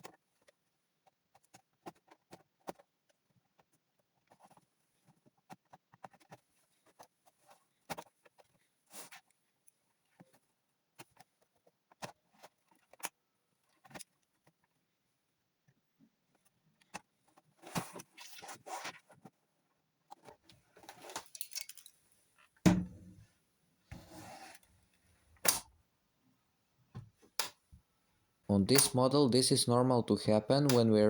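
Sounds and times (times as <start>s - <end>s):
louder knocks: 22.7s - 23.2s.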